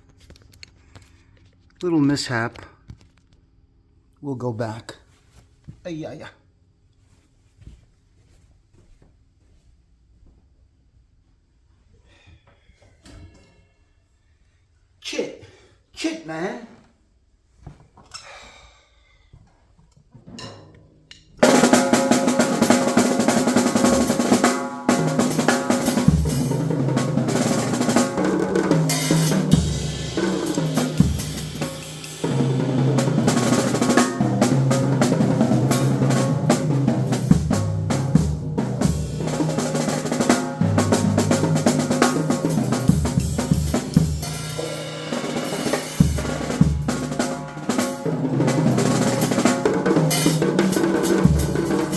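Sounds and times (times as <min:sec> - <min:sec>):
drum kit solo: 0:21.4 - 0:51.9.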